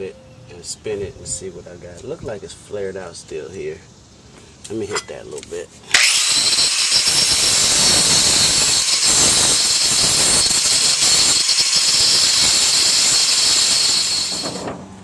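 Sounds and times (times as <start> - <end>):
angle grinder grinding steel: 5.9 - 14.7.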